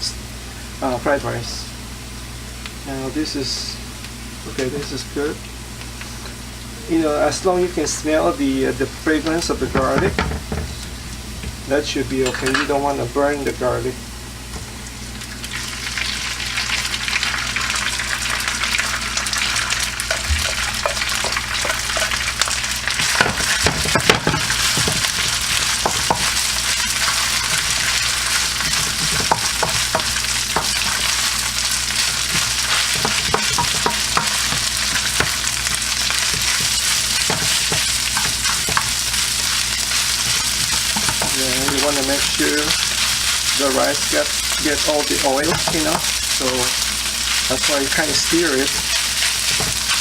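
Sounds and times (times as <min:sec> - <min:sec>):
rice sizzling in hot oil: 0:14.4 - 0:50.0
spatula scraping and tapping pan: 0:20.0 - 0:50.0.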